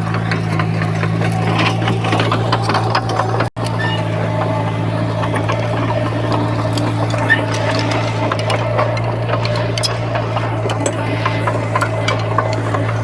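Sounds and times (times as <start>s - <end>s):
diesel engine droning: 0.0s - 13.0s.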